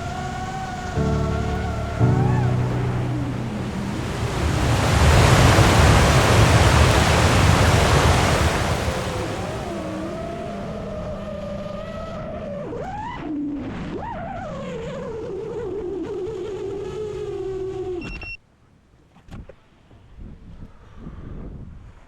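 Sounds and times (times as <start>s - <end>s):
drone propellers whining: 0.0s - 2.2s
rushing air: 3.1s - 10.2s.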